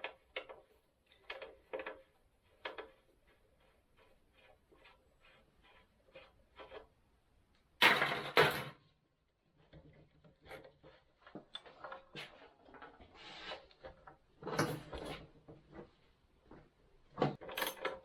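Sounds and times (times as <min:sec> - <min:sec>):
tools and parts clattering: 0:07.8 - 0:08.8, 0:16.5 - 0:18.0.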